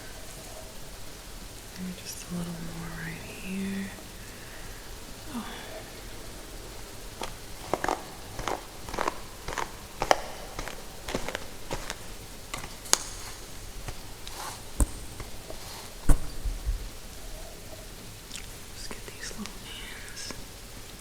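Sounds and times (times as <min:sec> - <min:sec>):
hair being bitten crunching: 0:04.1 - 0:17.2, 0:18.2 - 0:20.6.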